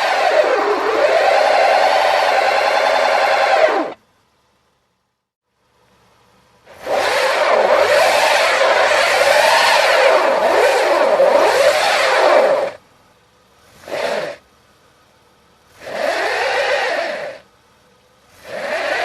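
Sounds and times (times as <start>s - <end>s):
car engine revving: 0.0s - 4.0s, 6.6s - 12.8s, 13.6s - 17.6s, 18.2s - 19.0s.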